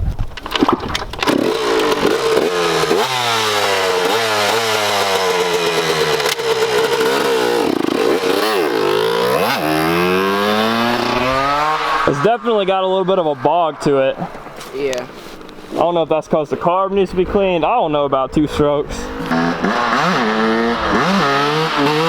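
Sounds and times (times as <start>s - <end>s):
dirt bike engine revving: 1.2s - 22.0s.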